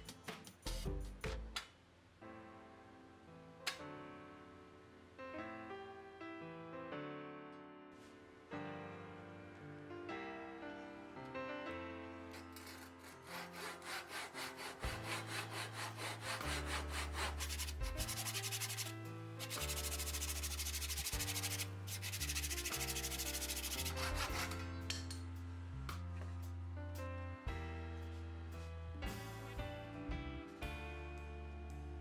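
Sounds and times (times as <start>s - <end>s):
piano and bass music: 0.0s - 1.6s, 2.2s - 32.0s
abrasive rubbing on wood: 12.6s - 24.6s.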